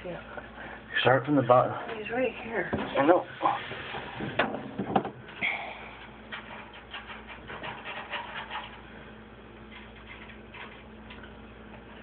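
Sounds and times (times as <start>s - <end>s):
faint steady hum: 0.0s - 12.0s
light clicks and scratches: 6.3s - 8.8s.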